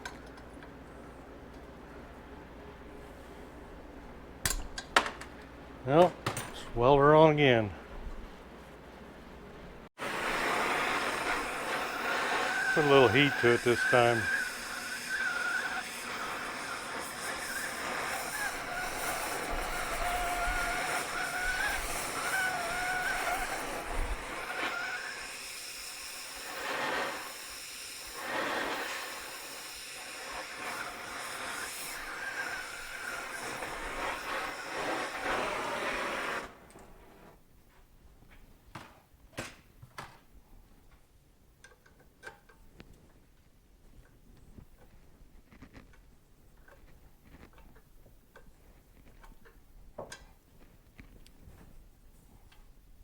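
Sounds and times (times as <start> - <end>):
gas torch flame hissing: 10.0 - 37.3.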